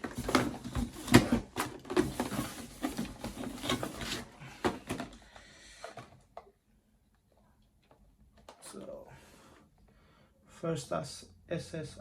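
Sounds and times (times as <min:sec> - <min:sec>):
packaging rustling: 0:00.0 - 0:05.2.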